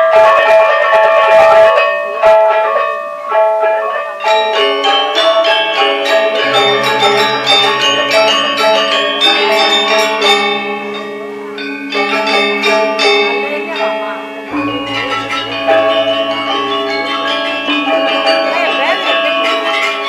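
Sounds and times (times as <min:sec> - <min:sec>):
metallophones interlocking strokes: 0:04.5 - 0:20.0
large gong struck: 0:06.0 - 0:20.0.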